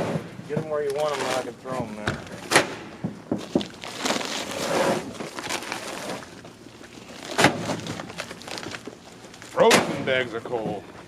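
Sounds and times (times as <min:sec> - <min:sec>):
bags rustling and scraping: 0:00.0 - 0:10.6
heavy bags thudding: 0:07.2 - 0:08.7.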